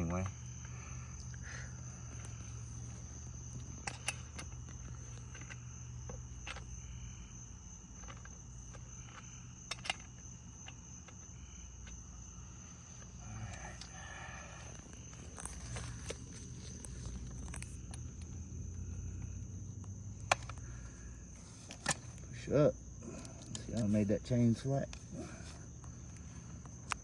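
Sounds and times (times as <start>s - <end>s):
crickets chirping: 0.0s - 27.0s.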